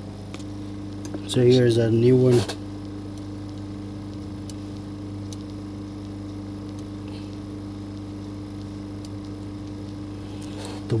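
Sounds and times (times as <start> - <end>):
low electrical hum: 0.0 - 11.0
faint small ticks: 2.8 - 10.6.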